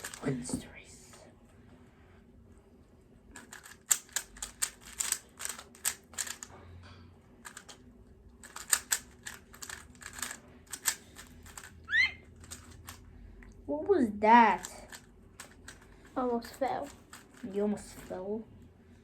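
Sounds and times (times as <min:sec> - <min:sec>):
plastic puzzle cube clicking: 0:03.4 - 0:06.5, 0:07.4 - 0:07.8, 0:08.4 - 0:13.0.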